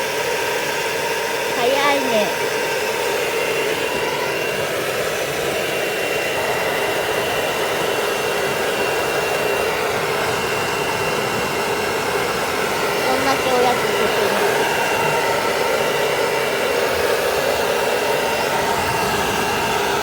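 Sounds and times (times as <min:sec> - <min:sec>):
hair dryer blowing: 0:00.0 - 0:20.0.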